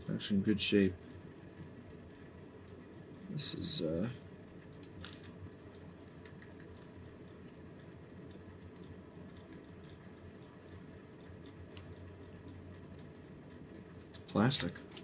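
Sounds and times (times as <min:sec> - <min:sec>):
low steady hum: 0:00.0 - 0:15.0
clock parts clicking: 0:03.4 - 0:15.0.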